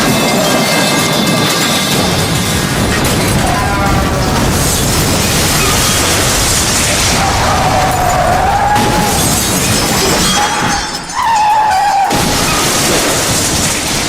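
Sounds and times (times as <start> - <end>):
glass shattering: 0.0 - 14.0
car crashing: 0.1 - 14.0
tyre screech: 5.5 - 13.2.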